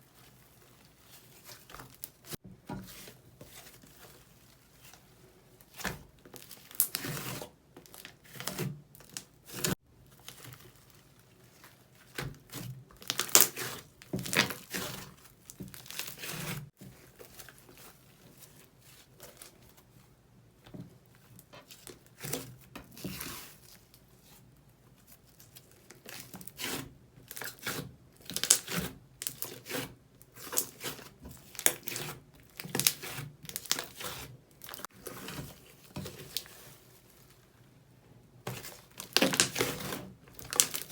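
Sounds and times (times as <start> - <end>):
slime crackling and popping: 13.0 - 13.6, 40.4 - 40.9.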